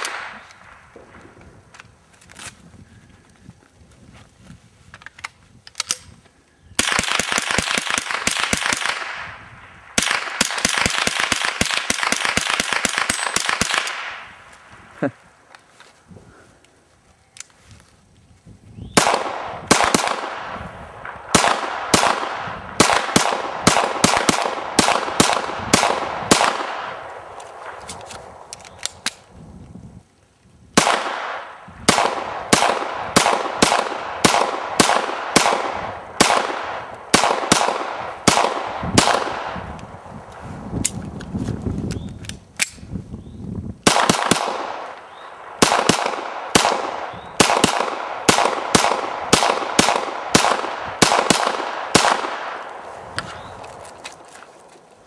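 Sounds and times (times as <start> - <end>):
rapid gunshots with echo: 19.0 - 27.0, 30.8 - 39.6, 45.5 - 52.6.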